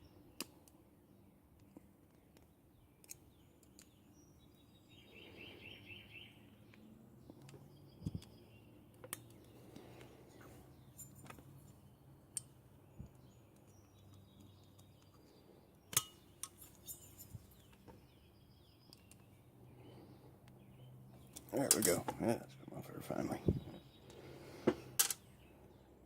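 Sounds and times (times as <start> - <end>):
hand tools clicking on metal: 15.9 - 17.3.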